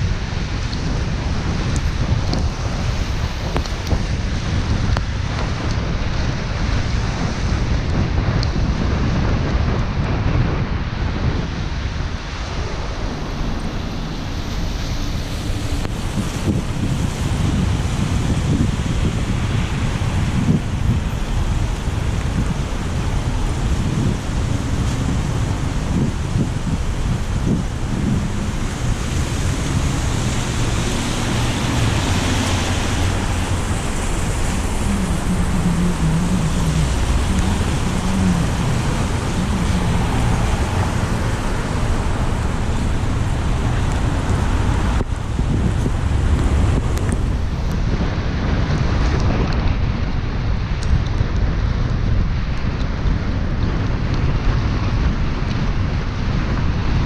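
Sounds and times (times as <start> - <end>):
wind buffeting microphone: 0.0 - 57.0
car engine hum: 11.6 - 47.8.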